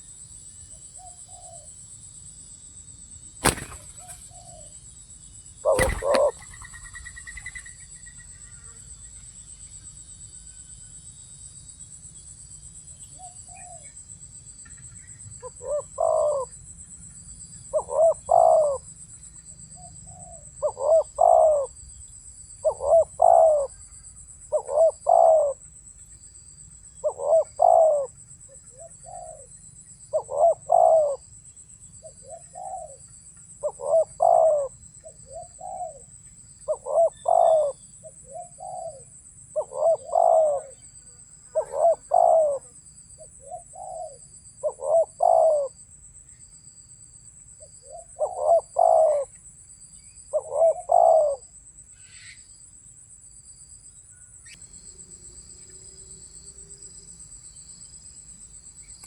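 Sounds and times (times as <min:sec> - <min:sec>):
high-pitched insect chorus: 0:00.0 - 0:59.0
dove cooing: 0:03.4 - 0:04.7, 0:05.6 - 0:07.6, 0:15.4 - 0:16.5, 0:17.7 - 0:18.8, 0:20.1 - 0:21.7, 0:22.6 - 0:23.8, 0:24.5 - 0:25.6, 0:27.0 - 0:28.2, 0:30.1 - 0:31.2, 0:32.2 - 0:33.0, 0:33.6 - 0:34.7, 0:35.3 - 0:36.1, 0:36.7 - 0:40.8, 0:41.5 - 0:42.7, 0:43.4 - 0:45.8, 0:47.9 - 0:49.3, 0:50.3 - 0:51.5.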